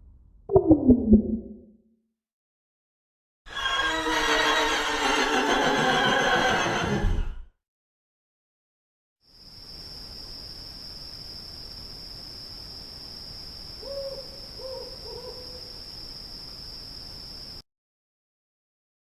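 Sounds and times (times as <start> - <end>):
high insect trill: 9.3 - 17.6
owl hooting: 13.8 - 15.8.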